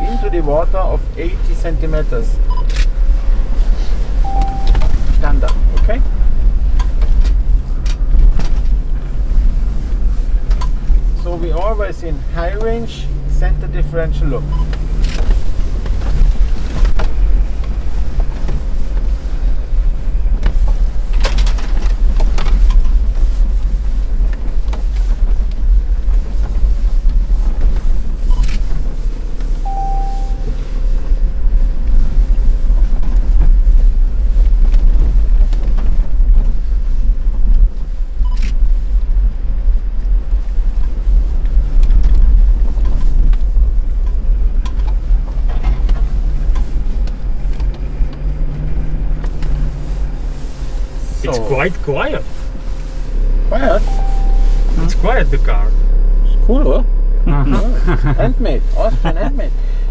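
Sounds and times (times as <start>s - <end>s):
brief beep: 0.0s - 0.5s, 4.2s - 5.0s, 29.6s - 30.5s, 53.8s - 54.8s
car cabin low rumble: 0.0s - 59.9s.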